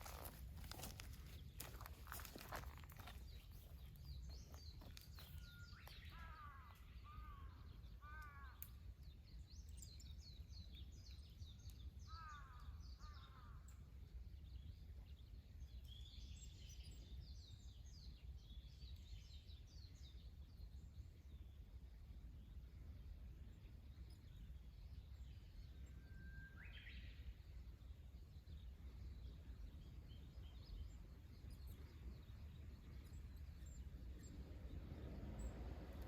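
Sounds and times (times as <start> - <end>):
small birds chirping: 0.0 - 21.7, 22.4 - 36.0.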